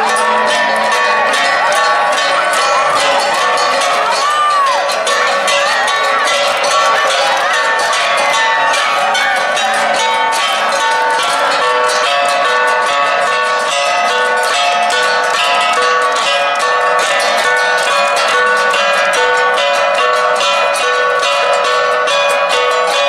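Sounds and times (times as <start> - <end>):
flat bronze gongs ensemble: 0.0 - 23.0.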